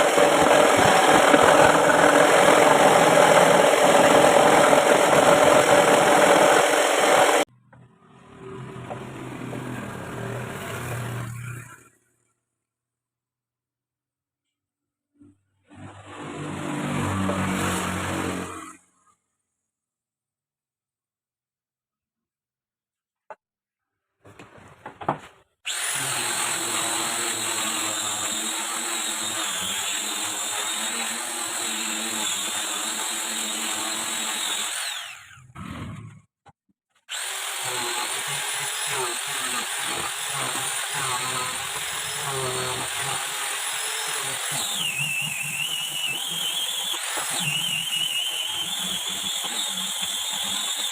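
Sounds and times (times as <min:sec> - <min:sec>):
scroll saw cutting wood: 0:00.0 - 0:07.5, 0:15.2 - 0:18.9, 0:25.6 - 0:36.2, 0:37.0 - 0:50.9.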